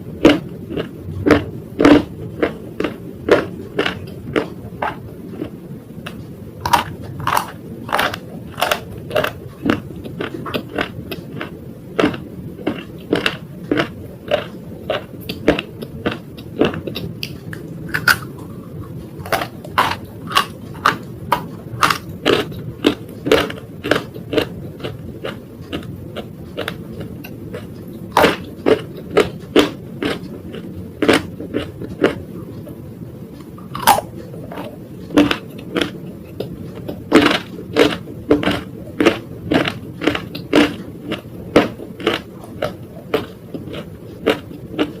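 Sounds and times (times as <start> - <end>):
crunchy bites and chewing: 0.2 - 5.5, 6.1 - 32.2, 33.4 - 45.0.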